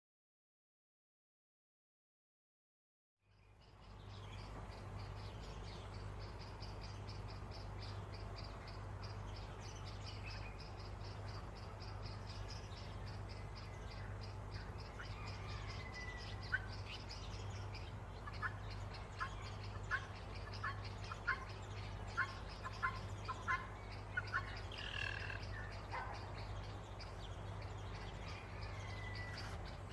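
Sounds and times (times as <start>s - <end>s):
birds chirping and trilling: 3.3s - 29.9s.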